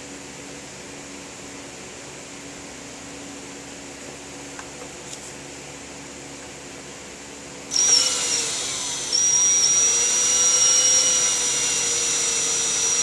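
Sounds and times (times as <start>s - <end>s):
power drill drilling into wood: 7.7s - 13.0s.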